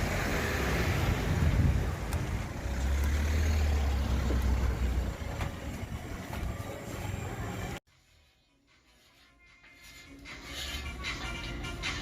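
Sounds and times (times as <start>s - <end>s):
wind buffeting microphone: 0.7s - 2.6s.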